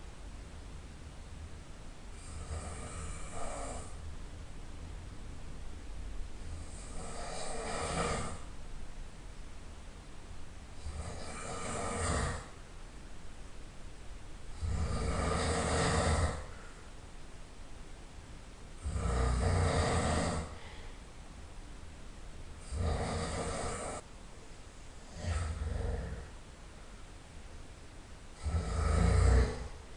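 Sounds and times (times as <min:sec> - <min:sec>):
person snoring loudly: 0:02.2 - 0:04.0, 0:06.5 - 0:08.5, 0:10.8 - 0:12.6, 0:14.5 - 0:16.5, 0:18.8 - 0:20.6, 0:22.6 - 0:24.0, 0:25.1 - 0:26.3, 0:28.4 - 0:29.8.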